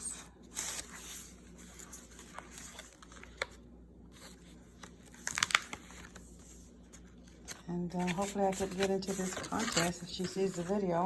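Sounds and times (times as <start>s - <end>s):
paper rustling and crinkling: 0.0s - 11.0s.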